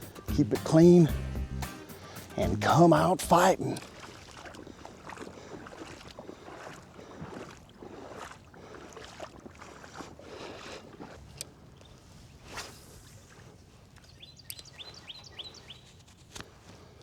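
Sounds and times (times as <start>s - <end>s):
water sloshing and splashing: 2.7s - 14.3s.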